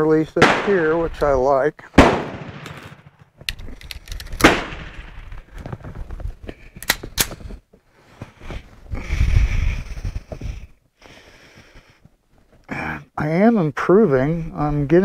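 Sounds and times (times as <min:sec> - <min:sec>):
pistol shot: 0:00.4 - 0:01.0, 0:02.0 - 0:03.2, 0:04.4 - 0:05.2.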